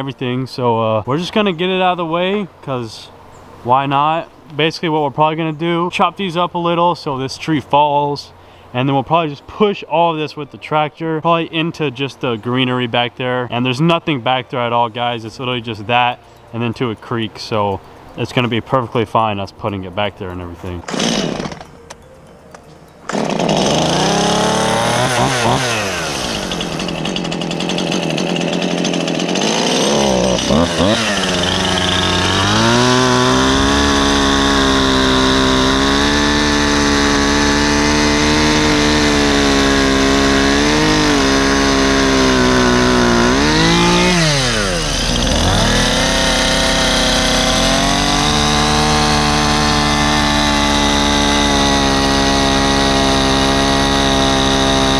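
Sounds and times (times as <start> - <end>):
chainsaw cutting wood: 15.3 - 22.0, 23.0 - 54.9.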